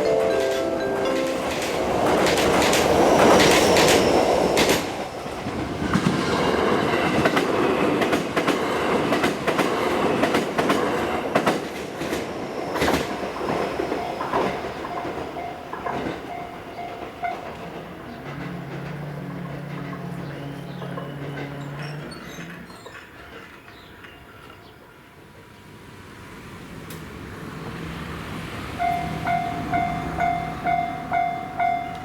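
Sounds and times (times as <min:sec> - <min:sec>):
wheels clacking over rail joints: 0:00.0 - 0:24.7
electric train running past: 0:00.0 - 0:32.0.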